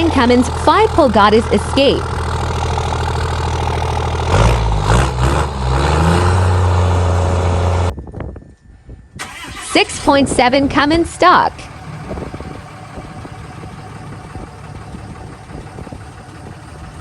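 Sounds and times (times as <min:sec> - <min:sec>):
diesel engine idling and revving: 0:00.0 - 0:08.0, 0:09.2 - 0:17.0.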